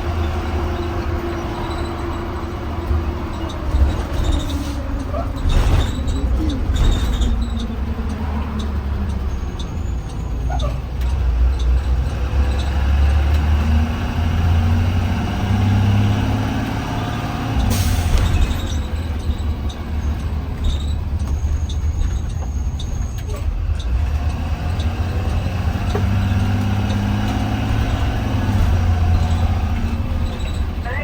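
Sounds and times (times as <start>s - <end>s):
bus engine accelerating: 0.0s - 31.0s
air brake hiss: 17.6s - 18.4s.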